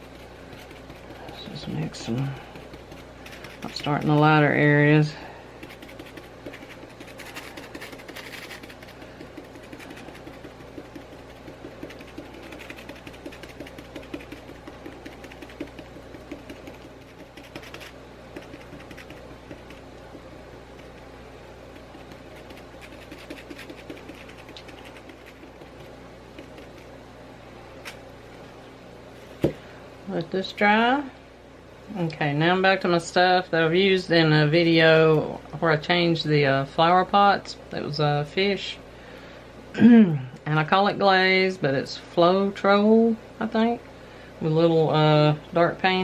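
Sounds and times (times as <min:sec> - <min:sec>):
paint brush tapping and scratching: 0:00.0 - 0:21.1, 0:21.7 - 0:27.0
steady low hum: 0:00.0 - 0:46.0.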